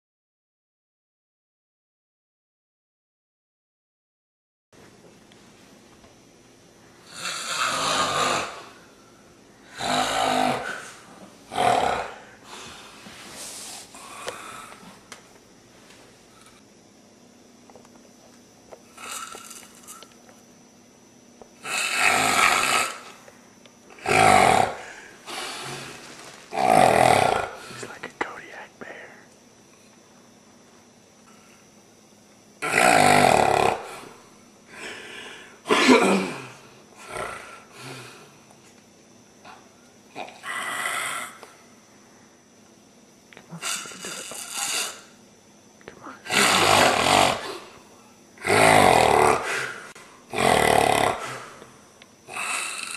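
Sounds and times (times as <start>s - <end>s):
person snoring loudly: 7.0s - 8.9s, 9.6s - 12.9s, 13.9s - 14.9s, 18.9s - 20.0s, 21.6s - 23.2s, 24.0s - 27.8s, 32.6s - 38.4s, 40.1s - 41.5s, 43.5s - 45.2s, 46.2s - 52.9s.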